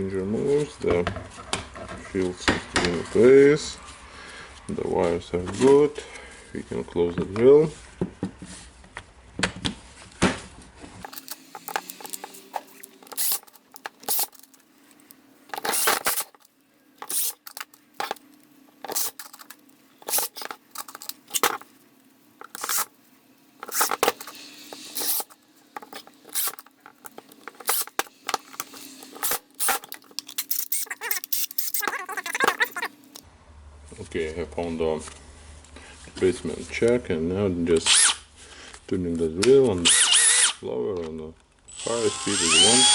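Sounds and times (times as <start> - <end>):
plastic parts clicking and scraping: 11.0 - 21.8, 22.4 - 22.9, 23.6 - 33.2.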